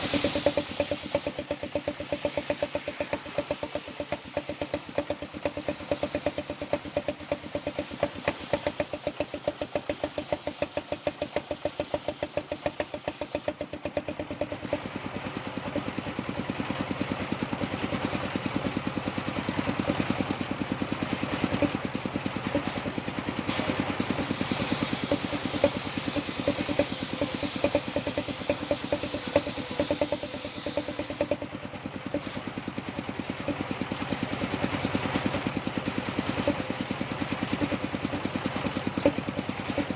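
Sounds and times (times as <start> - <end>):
loud hiss: 0.0 - 3.9, 23.3 - 31.5
sawmill engine knocking: 0.0 - 39.9.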